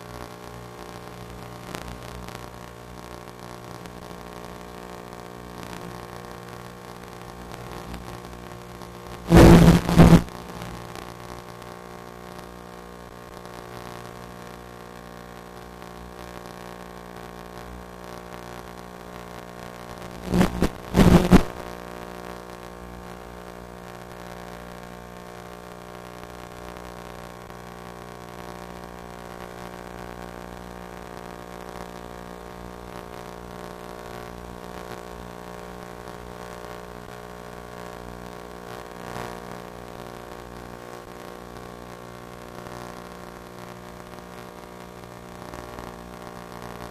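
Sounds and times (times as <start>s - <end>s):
steady hum of even tones: 7.4s - 10.4s.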